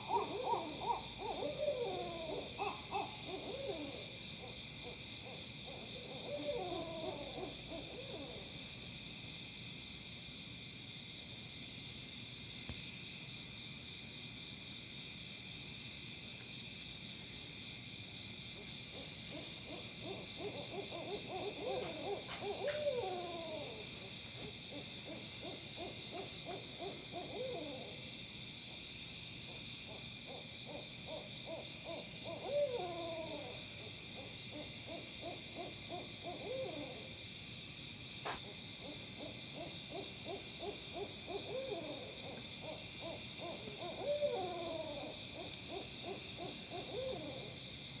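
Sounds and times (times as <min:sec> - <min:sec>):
owls cackling hoots: 0:00.0 - 0:08.6, 0:18.9 - 0:28.1, 0:29.5 - 0:37.2, 0:38.2 - 0:47.7
insect trill: 0:00.0 - 0:48.0.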